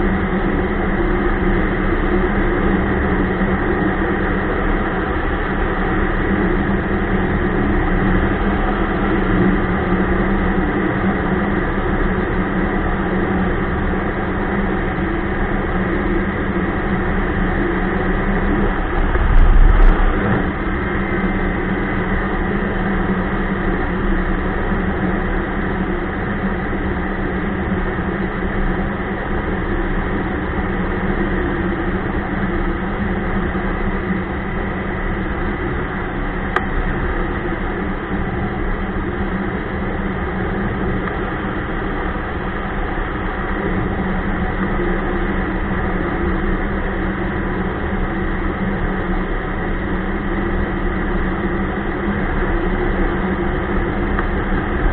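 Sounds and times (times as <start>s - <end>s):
snowmobile engine droning: 13.8s - 22.5s.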